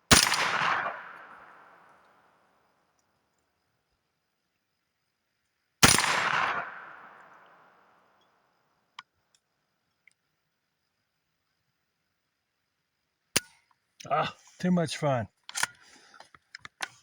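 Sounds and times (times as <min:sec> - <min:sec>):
gunshot with echo: 0:00.1 - 0:01.7, 0:05.8 - 0:07.4.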